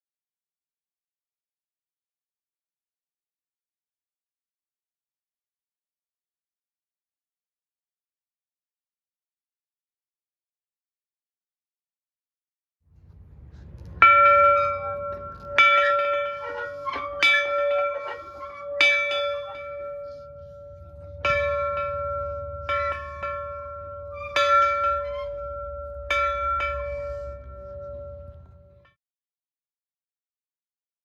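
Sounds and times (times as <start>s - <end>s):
low rumble: 12.9s - 28.9s
large metal bell ringing: 13.7s - 28.9s.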